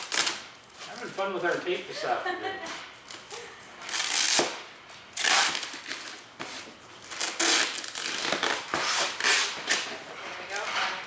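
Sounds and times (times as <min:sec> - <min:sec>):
packing tape ripping off roll: 0:00.0 - 0:01.2, 0:03.1 - 0:10.7.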